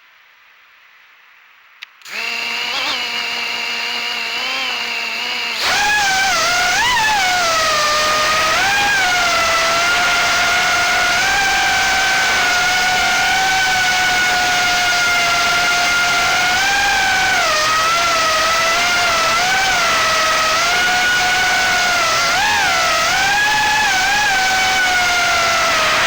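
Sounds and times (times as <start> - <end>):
quadcopter motors whining: 2.0 - 26.0.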